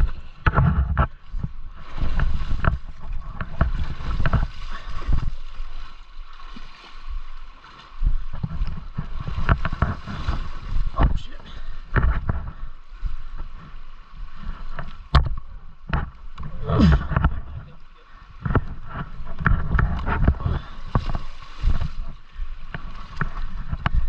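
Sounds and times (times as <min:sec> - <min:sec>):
wind on microphone: 0:00.0 - 0:05.6, 0:16.4 - 0:24.0
water splashing and gurgling: 0:00.0 - 0:24.0.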